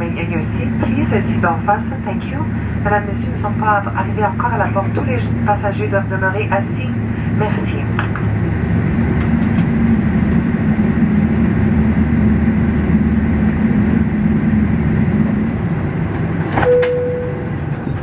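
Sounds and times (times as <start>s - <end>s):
aircraft cabin engine hum: 0.0s - 18.0s
click: 16.5s - 17.0s
short steady tone: 16.6s - 17.5s.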